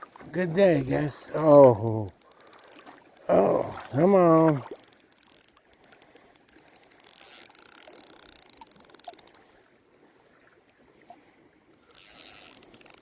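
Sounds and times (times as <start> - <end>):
fishing reel clicking: 1.0 - 3.7, 4.4 - 9.5, 11.7 - 13.0.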